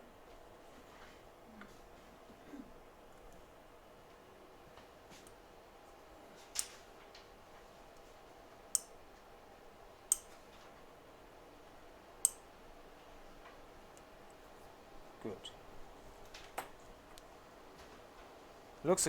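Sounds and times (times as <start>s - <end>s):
sharp high clicks: 10.1s - 10.4s.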